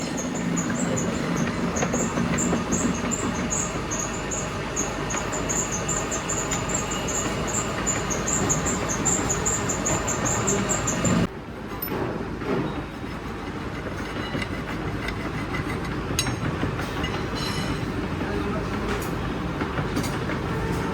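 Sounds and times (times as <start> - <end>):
machinery mechanical din: 0.0 - 11.3
rapid high chirping: 0.0 - 11.3.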